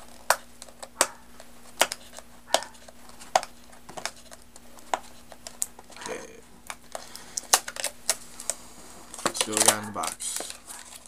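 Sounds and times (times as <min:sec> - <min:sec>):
faint steady hum: 0:00.0 - 0:11.0
packaging being opened: 0:00.0 - 0:11.0.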